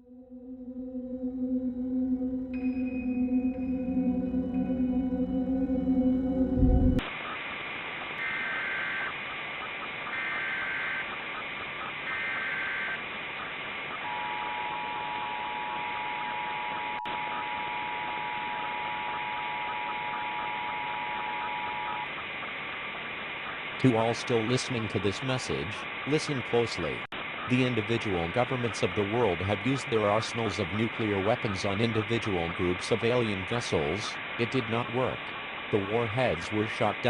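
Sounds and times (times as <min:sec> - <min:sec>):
ambient music: 0:00.0 - 0:07.1
radio static hiss: 0:07.0 - 0:37.0
data tone bursts: 0:08.2 - 0:22.3.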